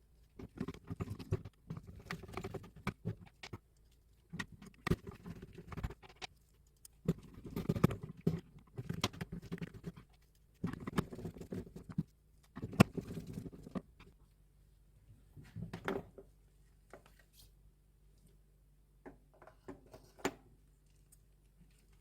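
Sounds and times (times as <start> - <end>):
scratching of small parts: 0.0 - 14.2, 19.4 - 22.0.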